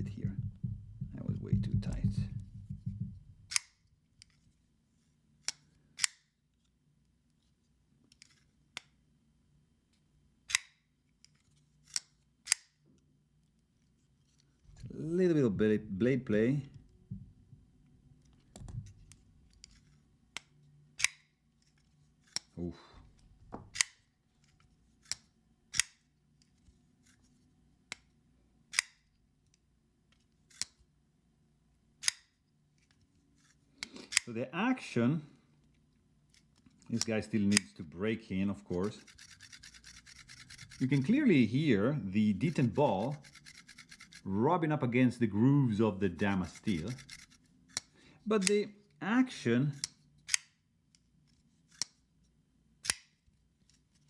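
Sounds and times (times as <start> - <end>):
folding knife metallic clicks: 5.4 - 6.3, 20.4 - 21.3, 25.0 - 26.0, 28.7 - 29.1, 32.0 - 32.3, 52.8 - 53.2.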